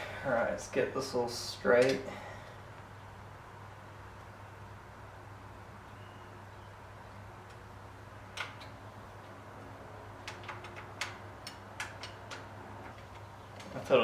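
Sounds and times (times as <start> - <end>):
bicycle parts clicking: 8.3 - 9.4, 10.2 - 13.9.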